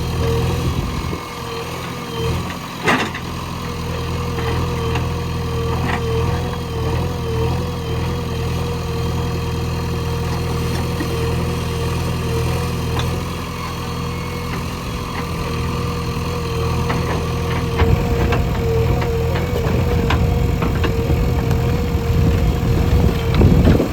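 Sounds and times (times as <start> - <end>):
diesel engine running: 0.0 - 23.9.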